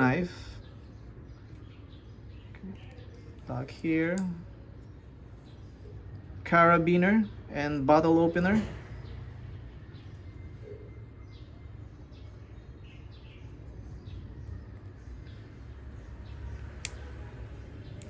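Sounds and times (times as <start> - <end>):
sharp click: 16.6 - 17.3.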